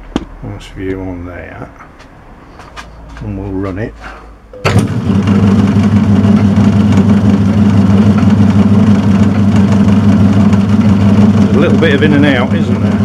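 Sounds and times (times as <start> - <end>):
lathe motor humming: 4.7 - 13.0.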